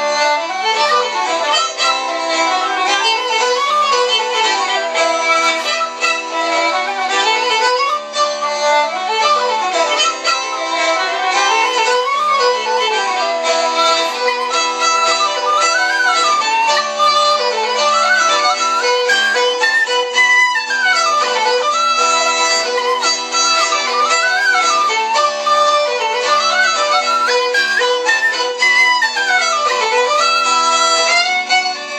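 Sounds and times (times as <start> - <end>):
fiddle playing a tune: 0.0 - 31.9.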